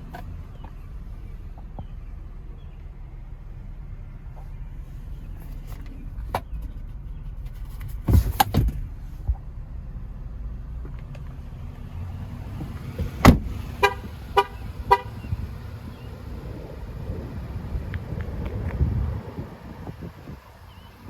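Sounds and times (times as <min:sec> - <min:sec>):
steady low rumble: 0:00.0 - 0:21.0
car horn toots: 0:13.7 - 0:15.5.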